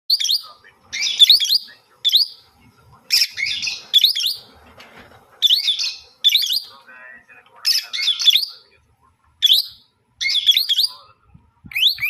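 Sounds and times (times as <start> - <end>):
lovebird chirping: 0.1 - 2.5, 3.1 - 4.6, 5.4 - 6.8, 7.6 - 8.7, 9.4 - 11.1, 11.7 - 12.0.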